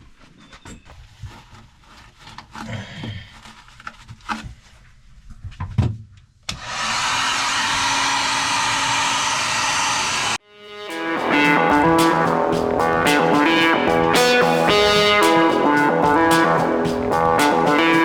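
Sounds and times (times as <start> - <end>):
shop vacuum running: 6.6 - 10.4.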